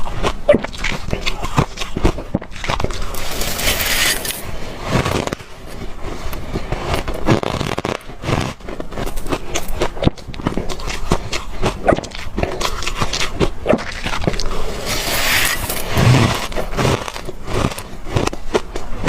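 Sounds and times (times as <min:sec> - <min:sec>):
ice being chewed: 0:00.0 - 0:19.0
scraping sound: 0:03.0 - 0:09.2, 0:13.7 - 0:17.6.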